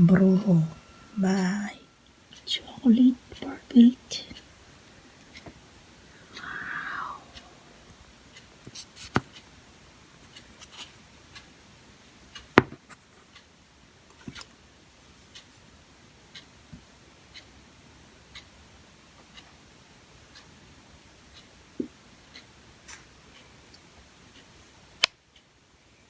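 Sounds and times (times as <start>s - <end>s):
faint ticks: 4.1s - 9.5s
small clicks and taps: 8.6s - 9.4s.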